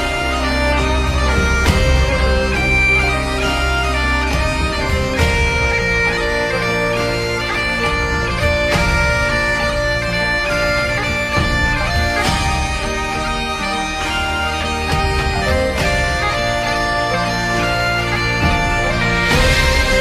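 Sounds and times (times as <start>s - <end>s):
bagpipe drones: 0.0s - 20.0s
bagpipe melody: 0.0s - 20.0s.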